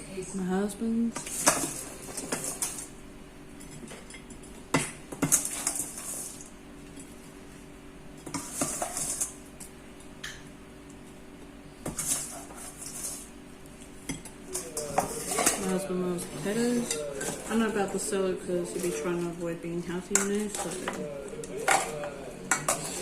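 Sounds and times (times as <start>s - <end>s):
faint steady hum: 0.0s - 23.0s
utensils clinking on a plate: 1.2s - 2.9s, 3.6s - 7.2s, 8.2s - 9.4s, 14.1s - 23.0s.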